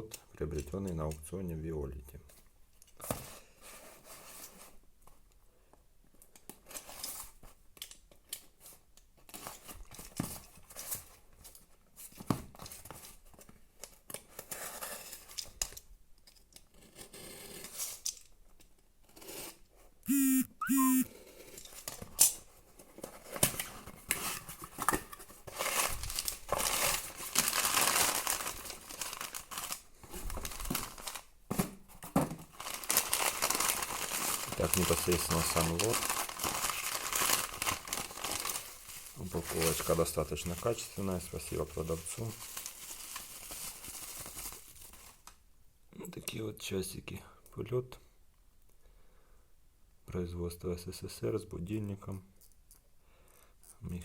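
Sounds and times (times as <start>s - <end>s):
packaging rustling: 23.0s - 31.4s, 32.0s - 45.3s
packaging tearing and crinkling: 25.5s - 31.3s, 32.5s - 40.8s, 42.1s - 45.3s.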